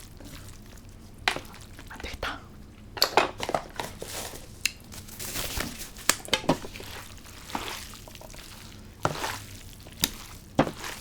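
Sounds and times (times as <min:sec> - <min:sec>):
noodles squishing and slapping: 0:03.1 - 0:11.0.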